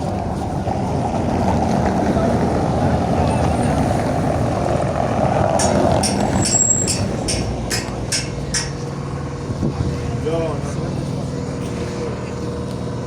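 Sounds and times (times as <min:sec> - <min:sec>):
low rumble of traffic: 0:00.0 - 0:13.0
sharp hammer strikes: 0:05.6 - 0:09.0.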